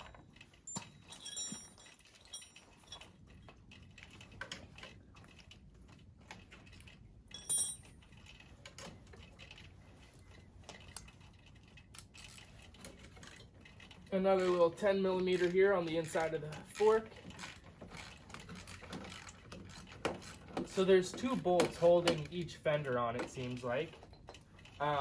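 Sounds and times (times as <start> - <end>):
metal hardware clinking: 0.0 - 3.2, 7.3 - 8.2.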